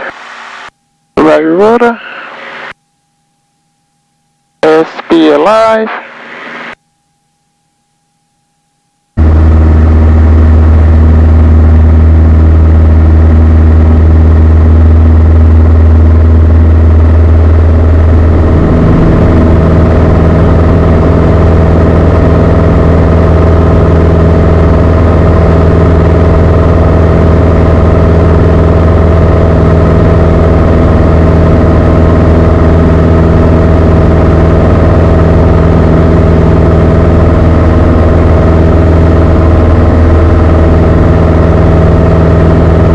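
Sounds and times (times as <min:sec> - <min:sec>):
airplane engine and propeller: 0:09.2 - 0:42.9.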